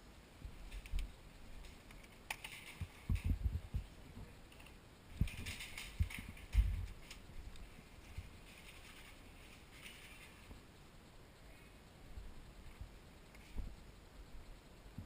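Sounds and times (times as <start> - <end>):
gear clicking: 0.7 - 3.5.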